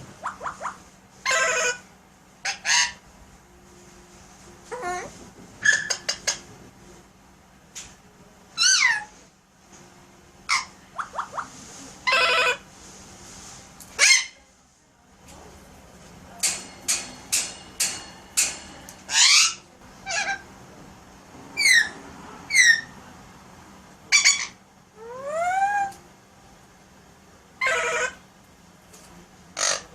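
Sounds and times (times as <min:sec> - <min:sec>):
parakeet chirping and squawking: 0:00.2 - 0:01.8, 0:02.4 - 0:03.0, 0:04.7 - 0:06.5, 0:08.6 - 0:09.1, 0:10.5 - 0:12.6, 0:19.1 - 0:20.4, 0:21.6 - 0:22.9, 0:24.1 - 0:25.9, 0:27.6 - 0:28.2, 0:29.6 - 0:29.9.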